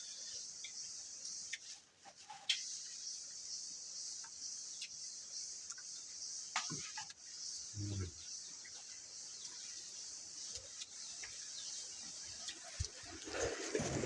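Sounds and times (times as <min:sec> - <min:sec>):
insects droning: 0:00.0 - 0:14.0.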